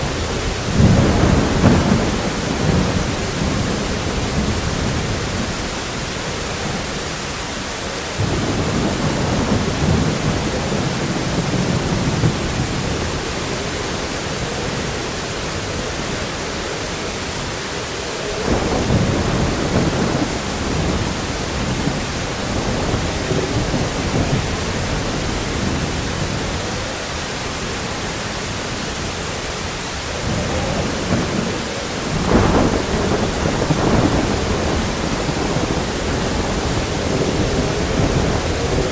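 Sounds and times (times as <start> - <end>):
rolling thunder: 0.0 - 7.4, 8.1 - 38.9
heavy rain: 0.0 - 38.9
wind: 0.0 - 38.9.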